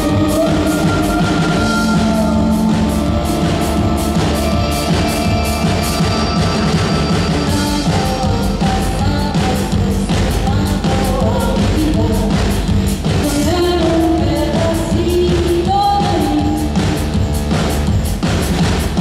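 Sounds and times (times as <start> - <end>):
woman singing: 0.0 - 4.2, 7.4 - 17.0
rock band playing: 0.0 - 19.0
steady drum beat: 0.0 - 19.0.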